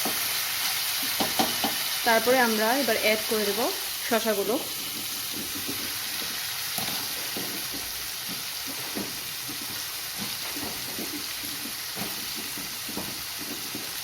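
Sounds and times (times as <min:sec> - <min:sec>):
chicken sizzling in oil: 0:00.0 - 0:14.0
spoon scraping and knocking pan: 0:01.0 - 0:01.9, 0:04.6 - 0:14.0.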